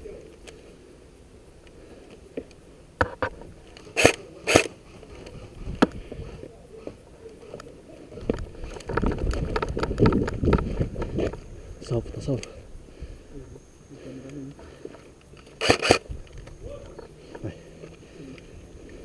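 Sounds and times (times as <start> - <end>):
rumble of movement: 0.0 - 19.0
sharp loud bursts: 4.0 - 4.8, 15.6 - 16.0
gear clicks and knocks: 8.2 - 11.4.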